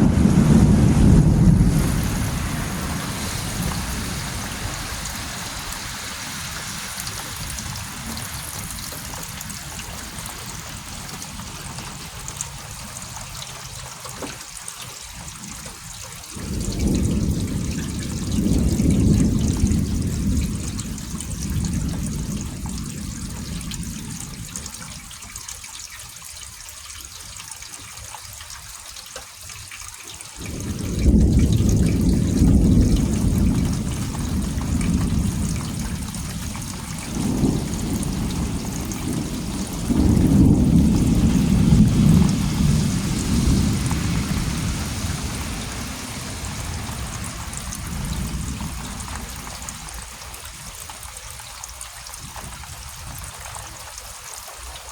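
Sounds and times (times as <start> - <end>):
rolling thunder: 0.0 - 13.3, 16.3 - 25.1, 30.4 - 51.4
steady rain: 0.0 - 54.9.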